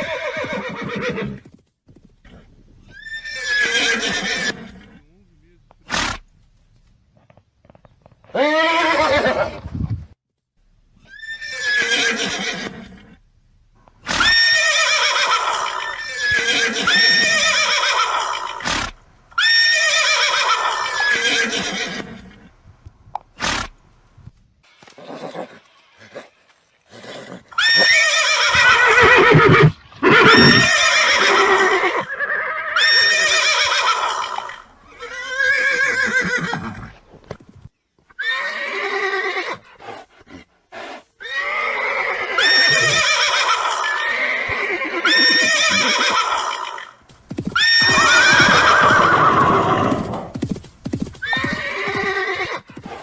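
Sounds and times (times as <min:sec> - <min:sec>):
horses whinnying: 0:00.0 - 0:01.4, 0:02.9 - 0:04.9, 0:08.3 - 0:09.6, 0:11.1 - 0:13.0, 0:13.8 - 0:24.2, 0:27.1 - 0:37.5, 0:38.2 - 0:39.6, 0:41.2 - 0:53.0
hoof knocks: 0:17.2 - 0:24.3, 0:27.5 - 0:31.7, 0:47.0 - 0:48.7.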